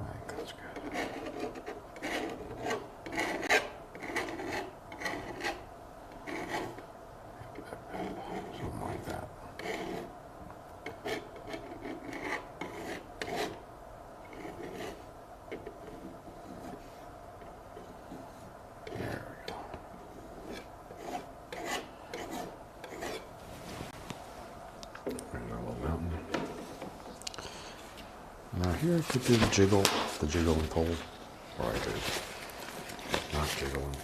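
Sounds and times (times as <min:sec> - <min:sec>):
palette knife scraping canvas: 0:00.8 - 0:05.6, 0:09.6 - 0:10.1, 0:20.0 - 0:24.0.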